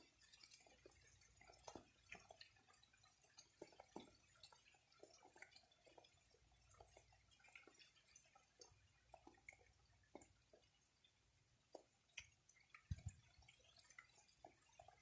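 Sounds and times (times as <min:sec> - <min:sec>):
raindrops dripping: 0:00.0 - 0:15.0.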